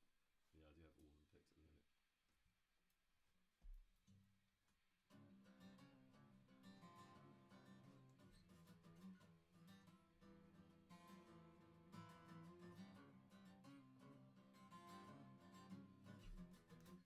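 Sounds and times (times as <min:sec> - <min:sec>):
acoustic guitar strumming: 0:05.5 - 0:17.0.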